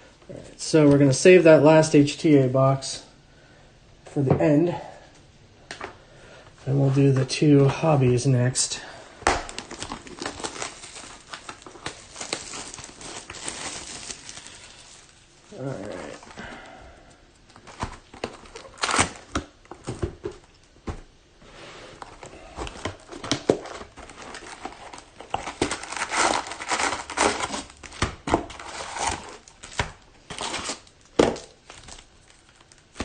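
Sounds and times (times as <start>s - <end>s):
plastic wrapping crinkling and tearing: 9.3s - 16.4s, 17.3s - 20.7s, 22.0s - 33.0s.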